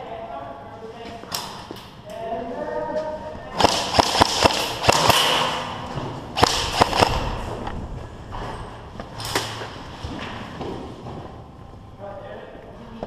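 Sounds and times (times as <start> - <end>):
airsoft gun shots: 3.6 - 5.8, 6.4 - 7.4.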